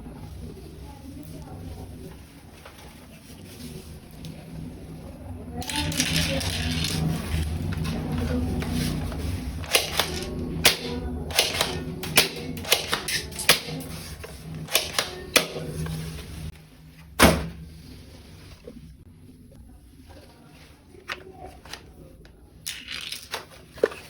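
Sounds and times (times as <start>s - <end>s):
toy guns clicking: 9.6s - 13.7s, 14.7s - 15.5s
loud plastic crack: 9.6s - 13.9s, 14.7s - 15.6s.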